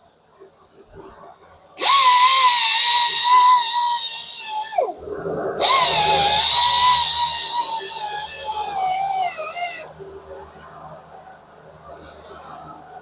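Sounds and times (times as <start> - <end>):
grinder whining over hiss: 1.8 - 4.9, 5.6 - 9.8.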